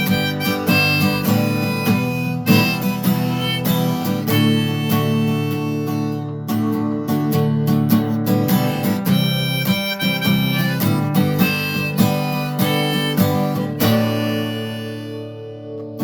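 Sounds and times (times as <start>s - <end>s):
harmonica playing: 0.0s - 6.3s, 8.3s - 16.0s
strummed acoustic guitar: 0.0s - 16.0s.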